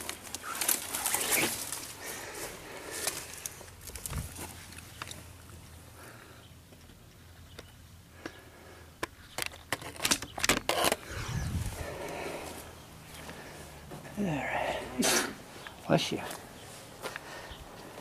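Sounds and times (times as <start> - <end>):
footsteps crunching on debris: 15.6 - 18.0.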